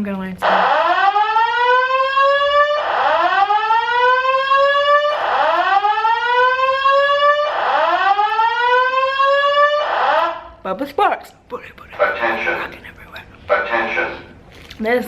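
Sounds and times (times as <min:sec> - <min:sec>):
fire alarm whooping tone: 0:00.4 - 0:10.6.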